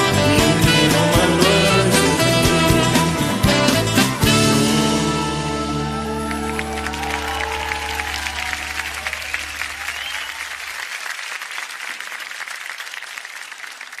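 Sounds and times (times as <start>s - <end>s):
held chord of backing music: 0.0s - 9.0s
audience applause: 6.0s - 14.0s.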